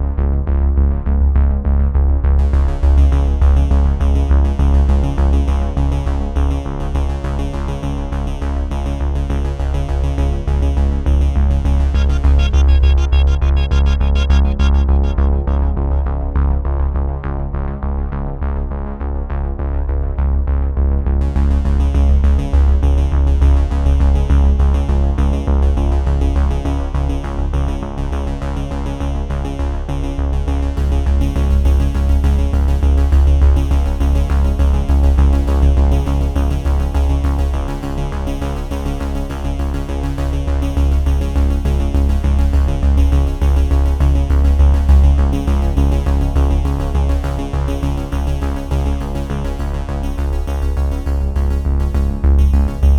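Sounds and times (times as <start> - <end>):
electronic music with synthesizer: 11.0 - 17.0, 45.0 - 52.9.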